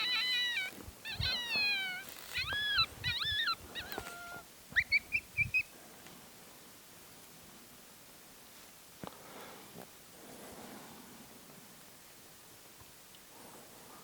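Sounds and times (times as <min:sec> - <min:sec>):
coyote howls and yelps: 0:00.0 - 0:05.6
coyote yipping: 0:00.0 - 0:05.7.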